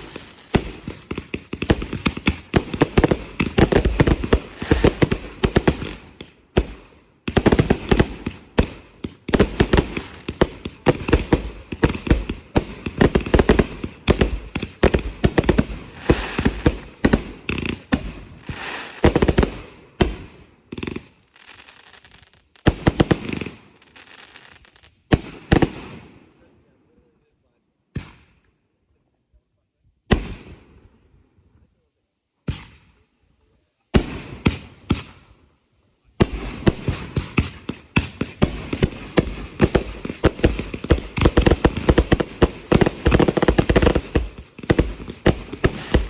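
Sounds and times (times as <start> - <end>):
fireworks crackling bangs: 0.0 - 25.9, 36.2 - 46.0.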